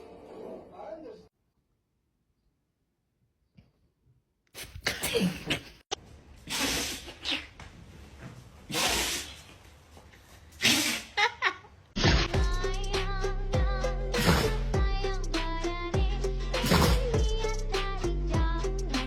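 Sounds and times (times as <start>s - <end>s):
dog sneezing: 4.6s - 5.7s, 6.4s - 7.6s, 8.7s - 9.5s, 10.6s - 11.2s.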